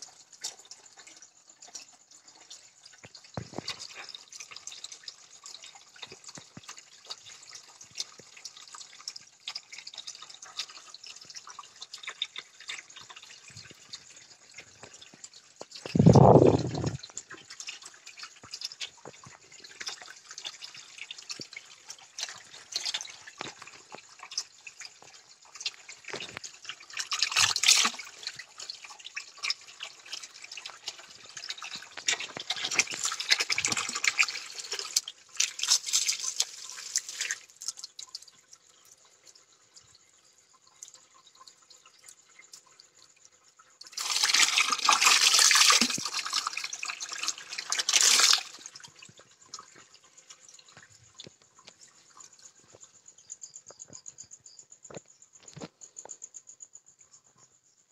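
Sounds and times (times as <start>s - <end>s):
water dripping: 0.0s - 57.5s
rushing splashing water: 15.7s - 17.2s.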